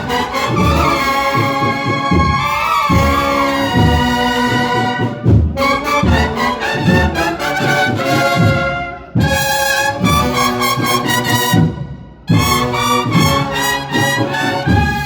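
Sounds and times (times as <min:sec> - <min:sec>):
trumpets and trombones: 0:00.0 - 0:15.0.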